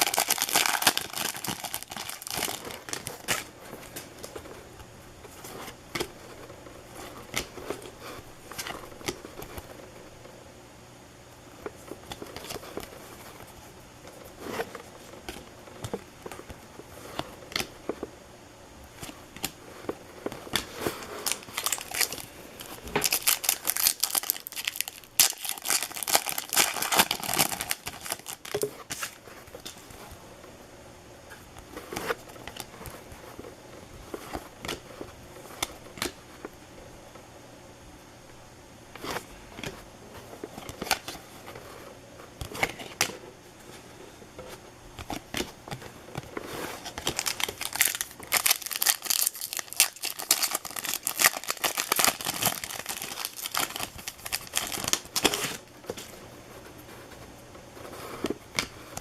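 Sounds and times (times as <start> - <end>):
wrappers crinkling and tearing: 0.0 - 4.5, 20.5 - 29.7, 46.8 - 55.6.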